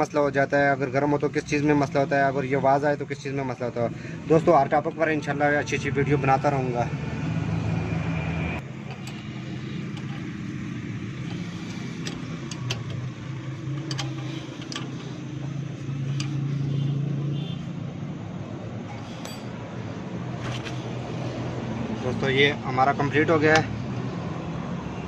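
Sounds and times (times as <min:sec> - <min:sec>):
vehicle engine running: 0:07.2 - 0:22.4
metallic tool clinks: 0:19.2 - 0:19.6.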